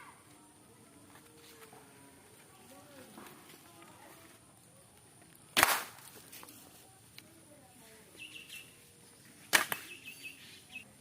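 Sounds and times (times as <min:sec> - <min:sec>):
toy gun sharp pops: 0:05.5 - 0:06.1, 0:09.5 - 0:09.9.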